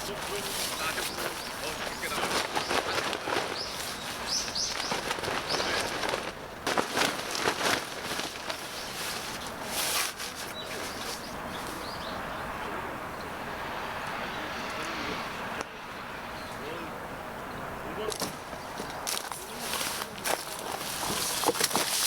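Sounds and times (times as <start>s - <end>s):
small birds chirping: 0.0s - 13.3s
steady outdoor hiss: 0.0s - 22.0s.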